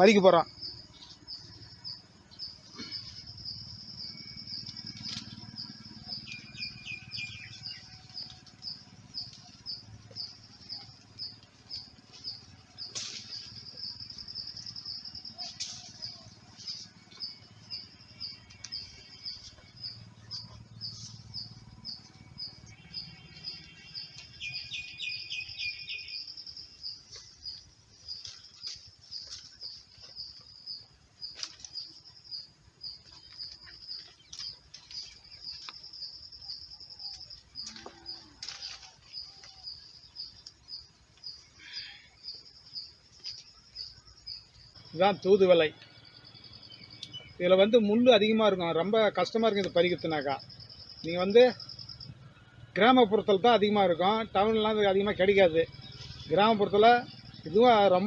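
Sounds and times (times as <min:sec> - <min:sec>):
bird trills: 0:00.0 - 0:45.1.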